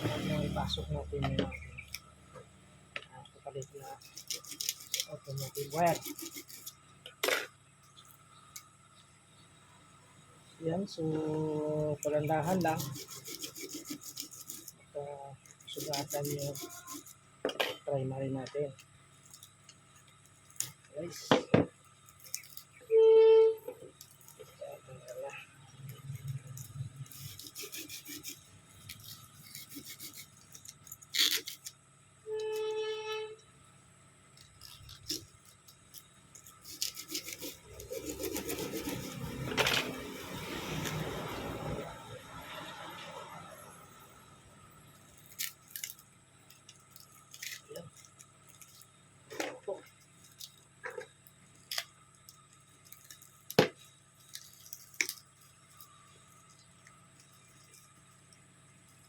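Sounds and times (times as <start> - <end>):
wire scraping against metal: 34.4 - 41.8.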